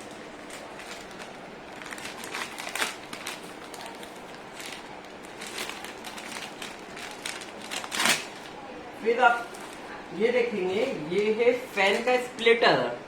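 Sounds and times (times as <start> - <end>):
packaging rustling and crinkling: 0.0 - 8.6, 9.4 - 10.0.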